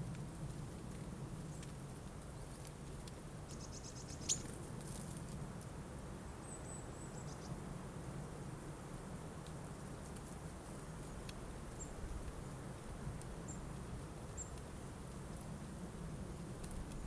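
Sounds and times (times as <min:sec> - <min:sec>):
birds calling and ticking: 0:03.5 - 0:05.0, 0:06.4 - 0:07.6, 0:10.1 - 0:14.8.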